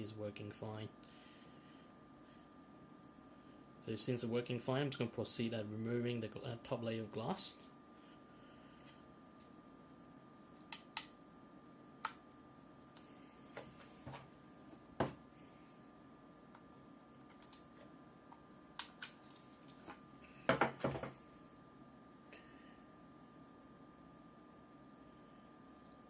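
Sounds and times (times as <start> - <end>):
knocks on workbench: 15.0 - 15.2, 20.5 - 21.1
small parts and tools clicking: 16.5 - 21.1.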